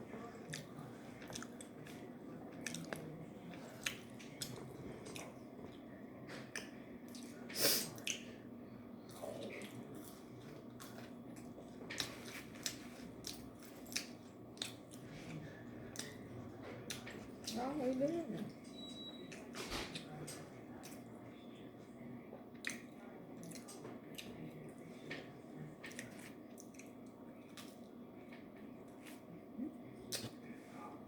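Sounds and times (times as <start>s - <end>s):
person chewing food: 0.0s - 8.3s, 9.1s - 17.6s, 22.6s - 24.5s, 25.1s - 29.3s.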